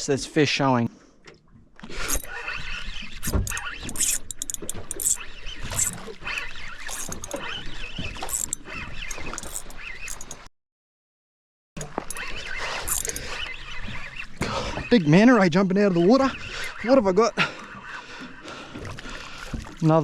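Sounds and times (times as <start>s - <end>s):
fishing gear rustling and clattering: 1.8s - 10.5s, 11.8s - 15.2s.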